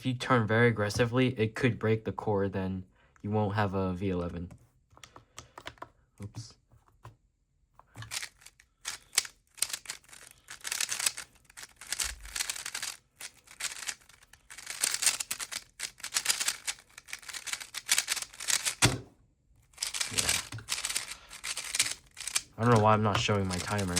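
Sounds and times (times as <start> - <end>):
puzzle cube clicking: 7.9 - 19.0, 19.7 - 23.9.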